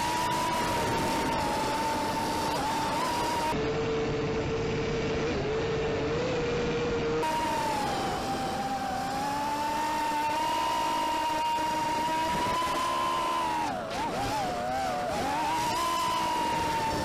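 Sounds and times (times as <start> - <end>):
quadcopter motors whining: 0.0 - 17.0.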